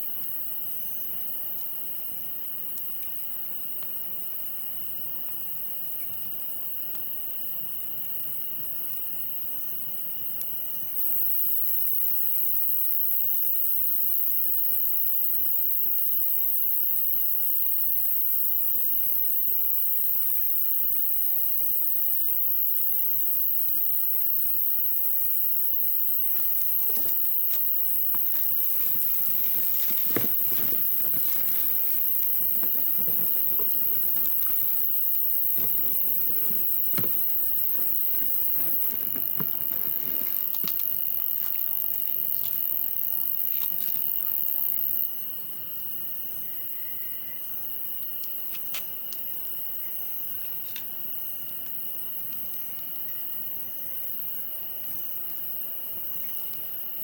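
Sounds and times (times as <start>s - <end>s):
insect chorus chirping: 0.0s - 57.0s
campfire crackling and popping: 26.2s - 41.6s.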